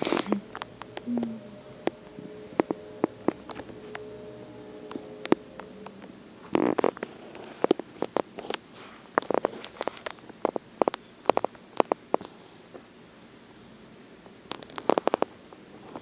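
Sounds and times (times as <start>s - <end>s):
puppy chewing in its sleep: 6.5s - 12.8s.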